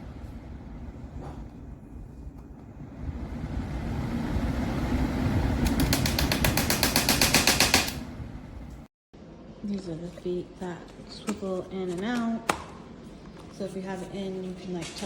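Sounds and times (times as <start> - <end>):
box fan airflow rumbling: 0.0 - 8.9
fast even clicking: 5.6 - 8.0.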